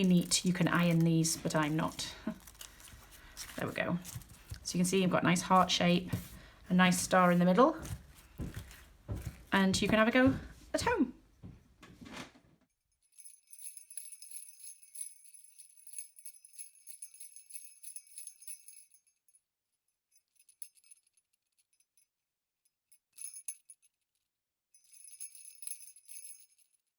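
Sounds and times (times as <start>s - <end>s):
sleigh bells jingling: 13.0s - 19.2s, 24.8s - 26.8s.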